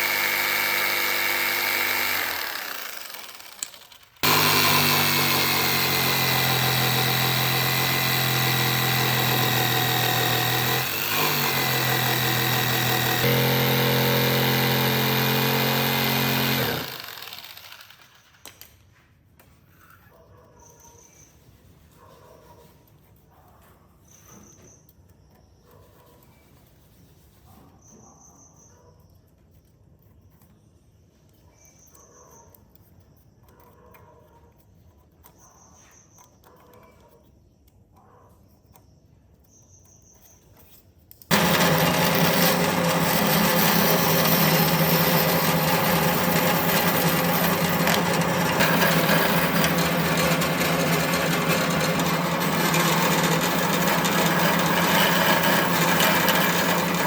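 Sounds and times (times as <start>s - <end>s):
power tool grinding wood: 0.0s - 18.1s, 41.3s - 57.0s.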